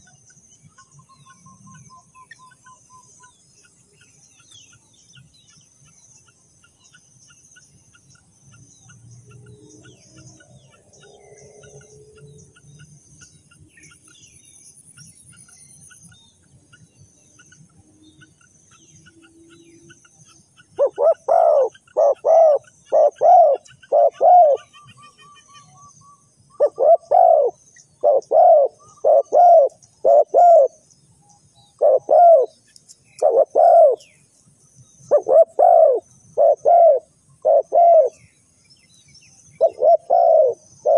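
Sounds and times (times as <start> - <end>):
dove cooing: 20.8 - 25.0, 26.5 - 30.8, 31.8 - 32.6, 33.2 - 34.1, 35.1 - 38.2, 39.6 - 40.9.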